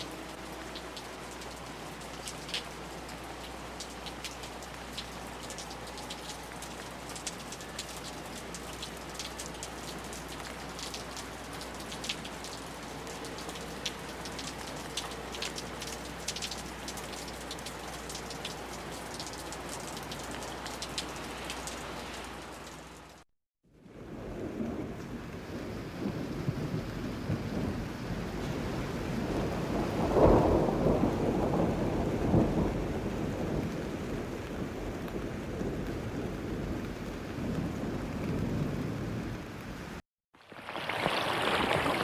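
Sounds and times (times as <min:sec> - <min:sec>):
raindrops ticking on hard surface: 0:00.0 - 0:23.2, 0:40.4 - 0:42.0
steady rain hiss: 0:00.0 - 0:23.2, 0:23.8 - 0:42.0.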